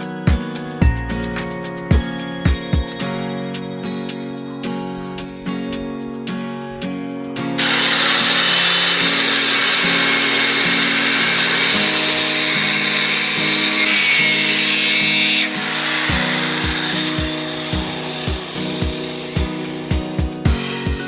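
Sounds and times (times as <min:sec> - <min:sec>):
guitar music: 0:00.0 - 0:21.0
power tool grinding: 0:07.6 - 0:21.0.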